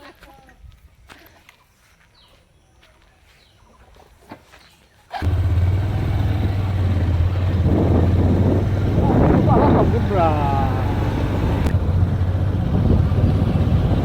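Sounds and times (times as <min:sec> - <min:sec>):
engine humming: 0:05.2 - 0:14.0.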